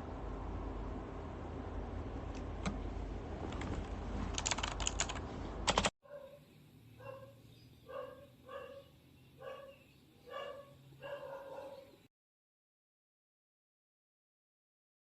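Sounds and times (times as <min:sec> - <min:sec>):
mechanical keyboard keystrokes: 0:03.5 - 0:05.9.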